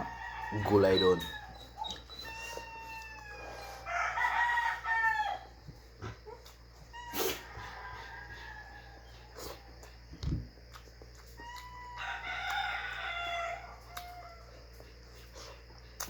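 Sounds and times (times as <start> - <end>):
rooster crowing: 0.0 - 5.7, 6.8 - 9.8, 11.4 - 14.7.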